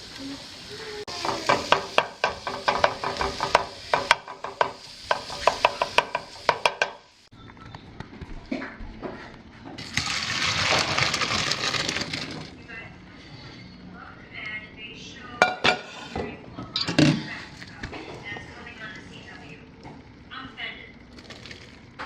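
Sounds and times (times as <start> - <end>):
garlic sizzling in oil: 0.0 - 7.3.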